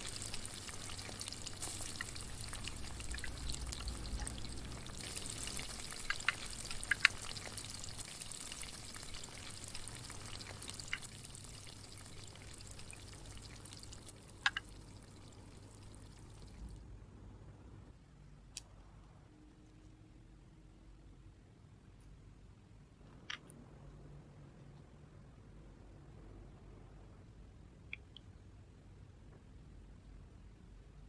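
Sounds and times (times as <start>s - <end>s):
sizzling frying hiss: 0.0s - 16.7s.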